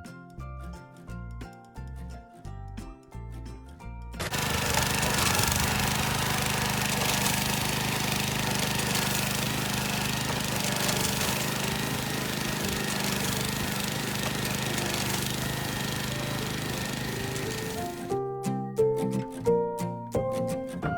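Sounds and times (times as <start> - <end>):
farm machine humming and rattling: 4.2 - 18.2.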